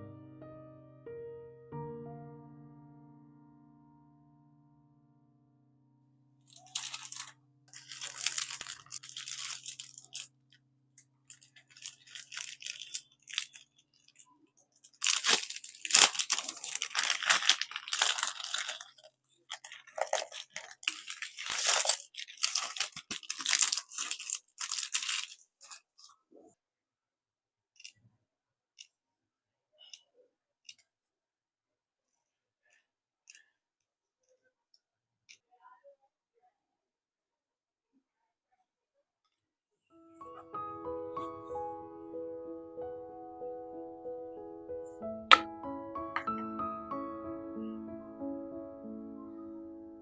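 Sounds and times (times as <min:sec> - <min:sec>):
crinkling and rustling handling: 0:06.5 - 0:10.4, 0:11.0 - 0:26.5.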